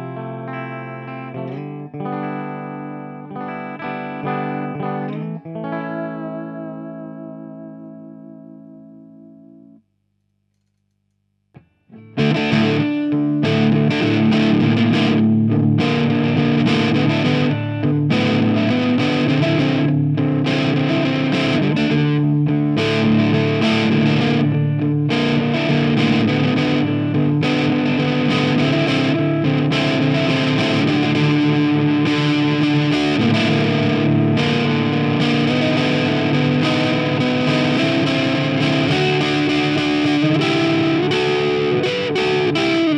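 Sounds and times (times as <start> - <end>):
distorted electric guitar: 0.0 - 9.8, 11.6 - 42.9
small click: 10.2 - 11.2.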